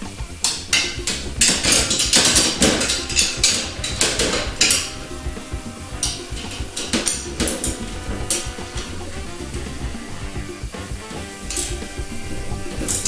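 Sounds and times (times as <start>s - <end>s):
wrench clinking on metal clamp: 0.4s - 5.2s, 5.9s - 9.1s.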